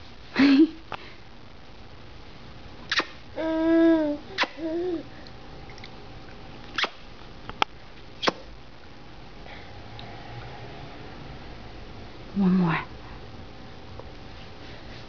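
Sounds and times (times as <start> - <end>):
baby saying aah: 3.4 - 5.0
baby cooing: 3.4 - 5.1.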